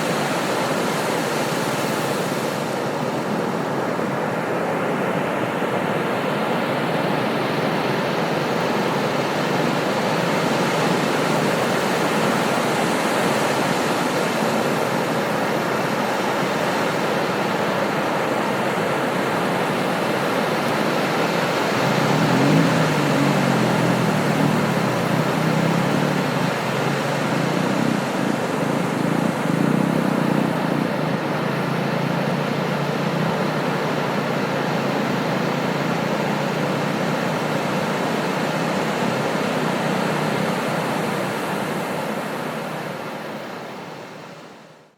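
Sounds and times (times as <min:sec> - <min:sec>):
ocean surf breaking: 0:07.4 - 0:43.9.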